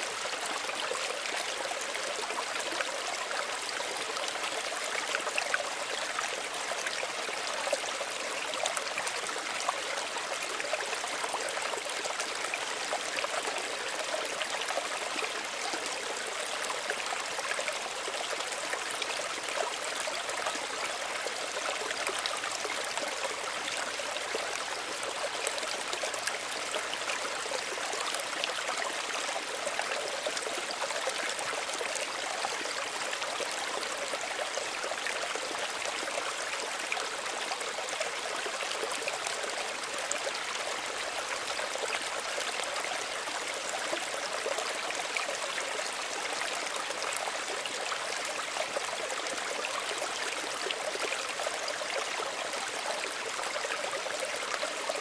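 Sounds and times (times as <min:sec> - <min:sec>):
stream babbling over stones: 0:00.0 - 0:55.0.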